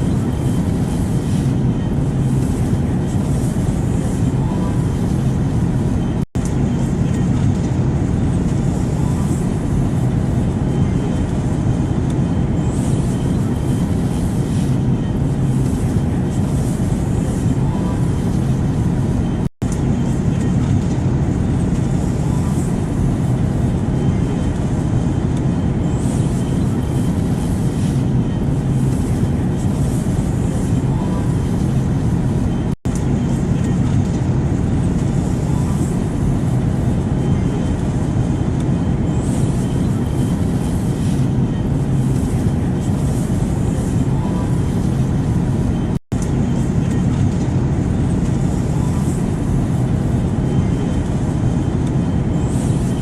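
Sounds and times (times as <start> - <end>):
jet engine rumble in cabin: 0.0 - 53.0.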